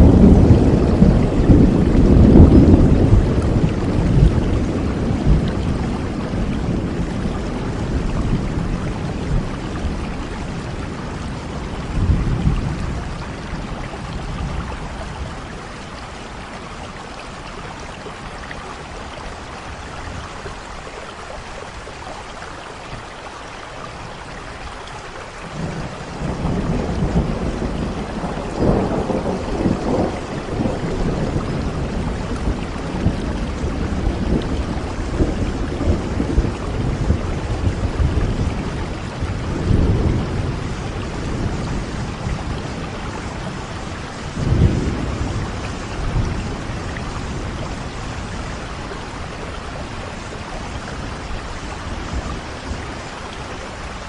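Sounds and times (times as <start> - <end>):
rolling thunder: 0.0 - 16.1, 25.4 - 53.4
heavy rain: 0.0 - 54.0.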